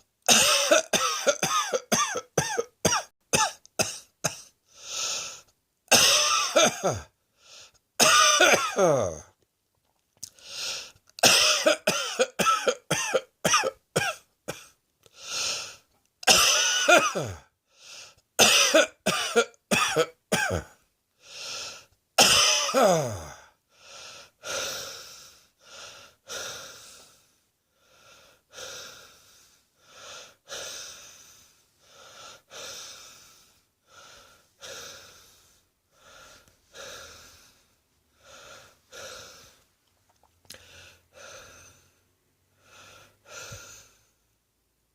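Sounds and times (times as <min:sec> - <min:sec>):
person coughing: 0:00.3 - 0:04.5, 0:05.9 - 0:07.1, 0:08.0 - 0:09.3, 0:11.2 - 0:14.8, 0:16.2 - 0:17.5, 0:18.4 - 0:20.8, 0:22.2 - 0:23.4.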